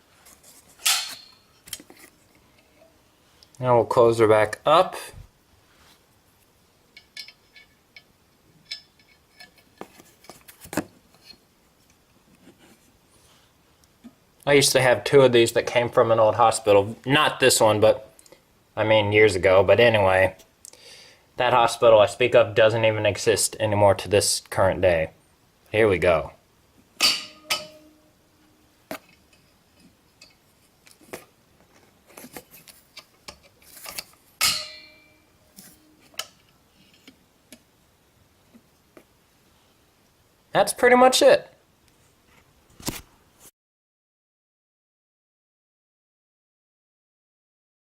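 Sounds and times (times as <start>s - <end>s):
small metallic clicks and clinks: 7.0s - 9.6s.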